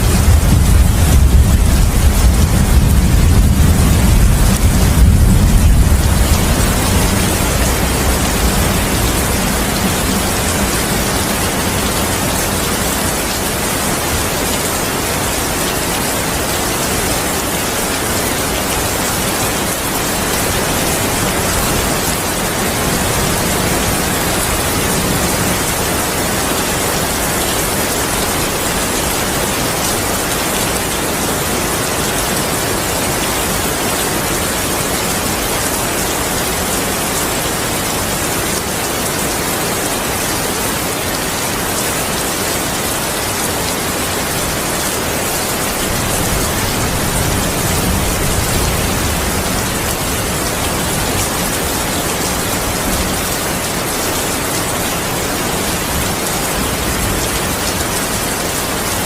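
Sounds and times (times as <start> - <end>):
low thunder rumble: 0.0 - 12.5
heavy rain: 0.0 - 59.0.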